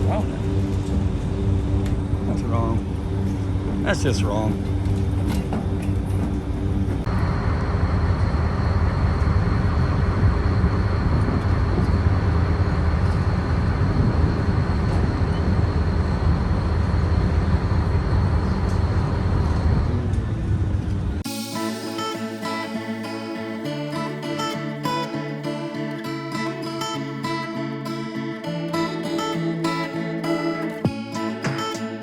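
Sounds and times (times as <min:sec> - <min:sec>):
faint high whine: 0:00.0 - 0:20.5, 0:21.2 - 0:32.0
vehicle engine rumble: 0:00.0 - 0:21.3.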